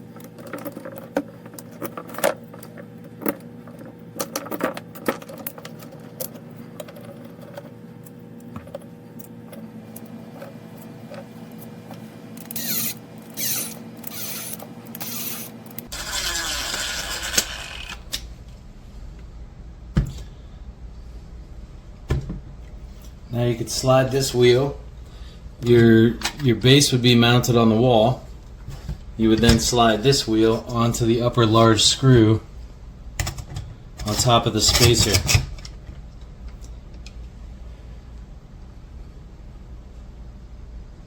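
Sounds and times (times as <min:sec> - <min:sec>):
small parts clicking and knocking: 0:00.1 - 0:07.7.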